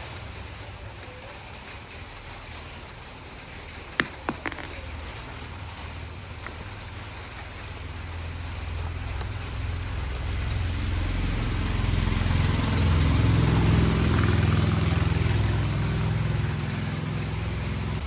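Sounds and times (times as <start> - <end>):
small engine running: 6.4 - 18.0.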